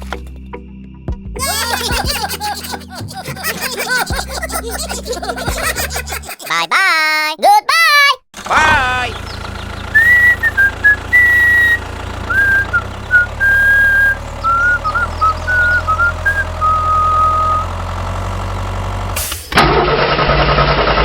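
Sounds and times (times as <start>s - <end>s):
low engine hum: 8.4s - 19.3s
loud rough mechanical noise: 8.4s - 21.0s
person whistling a tune: 10.0s - 17.7s.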